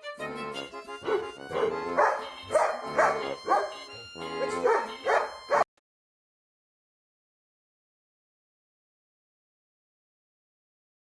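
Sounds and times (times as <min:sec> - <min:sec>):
background music: 0:00.0 - 0:05.6
dog barking: 0:01.1 - 0:03.8, 0:04.4 - 0:05.7.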